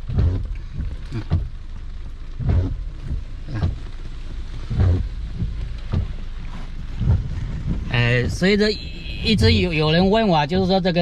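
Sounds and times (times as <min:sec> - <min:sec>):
heavy thuds: 0:00.0 - 0:01.6, 0:02.3 - 0:03.9, 0:04.6 - 0:08.5
rain on car body: 0:00.0 - 0:11.0
steady low rumble: 0:00.0 - 0:11.0.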